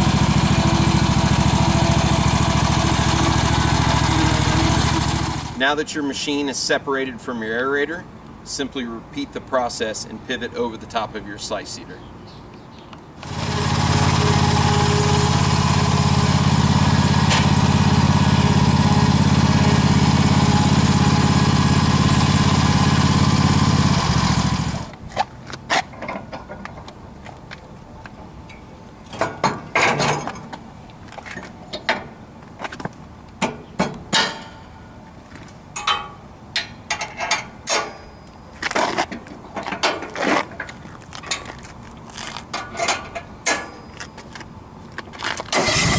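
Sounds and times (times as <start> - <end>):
small gasoline engine running: 0.0 - 5.6, 13.2 - 24.9, 45.5 - 45.9
metal clicks and clanks: 25.7 - 27.0, 28.1 - 32.2, 35.8 - 38.1, 38.7 - 41.7, 42.4 - 43.8.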